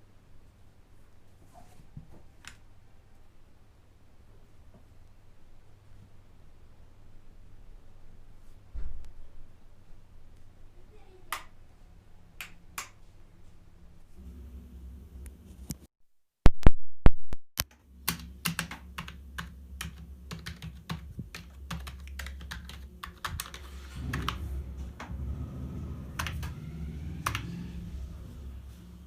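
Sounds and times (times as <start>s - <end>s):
keyboard keystrokes clicking: 18.0s - 24.4s, 26.2s - 26.6s, 27.2s - 27.5s
low hum: 22.8s - 29.0s.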